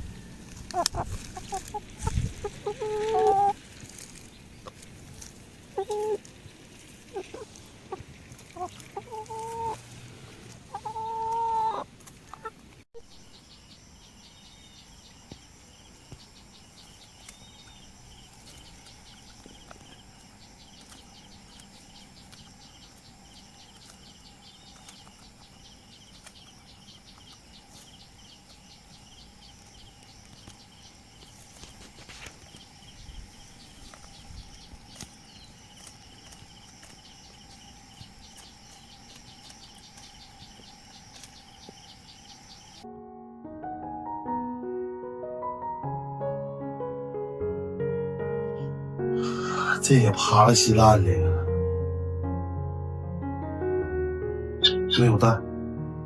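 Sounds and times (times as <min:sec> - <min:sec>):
chickens clucking and squawking: 0:00.0 - 0:12.8, 0:15.1 - 0:42.8.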